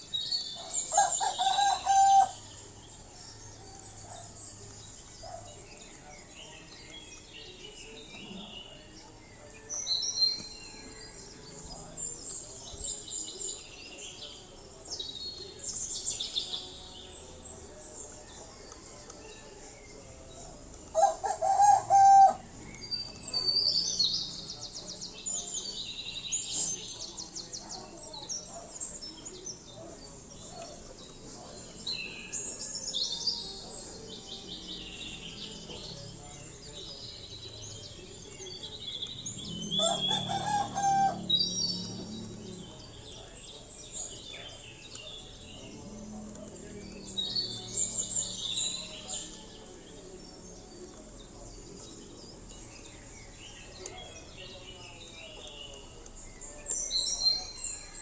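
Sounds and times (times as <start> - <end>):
small birds chirping: 0.0 - 58.0
rooster crowing: 0.9 - 2.4, 39.6 - 41.4.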